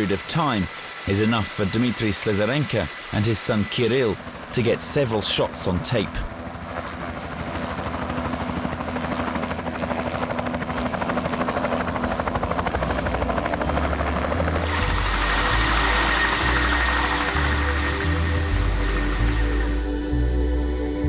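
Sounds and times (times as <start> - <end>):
helicopter rotor chopping: 0.0 - 19.0
music with low bass notes: 13.7 - 21.0.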